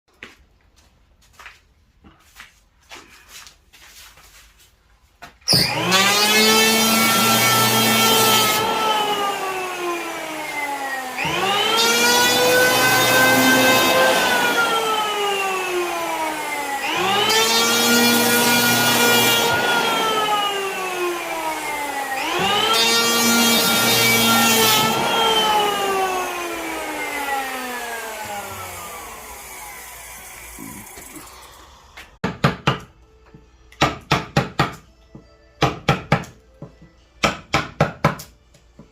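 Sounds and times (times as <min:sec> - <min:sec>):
electric carving tool whining: 0:05.5 - 0:32.2.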